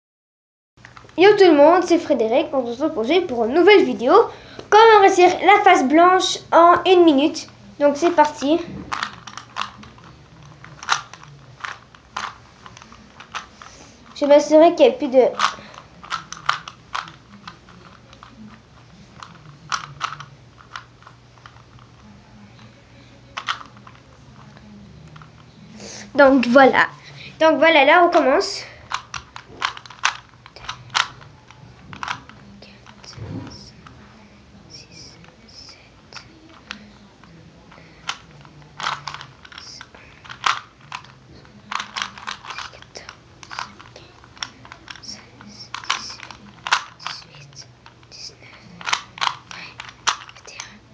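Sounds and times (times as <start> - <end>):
plastic puzzle cube clicking: 8.0 - 14.2, 15.4 - 18.6, 19.2 - 22.0, 23.4 - 25.5, 28.9 - 33.8, 38.0 - 50.7
puzzle cube layers clicking: 38.0 - 50.7.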